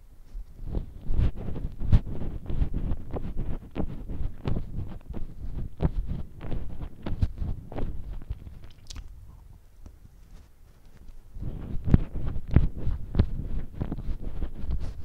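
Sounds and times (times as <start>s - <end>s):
person chewing: 8.2s - 9.5s.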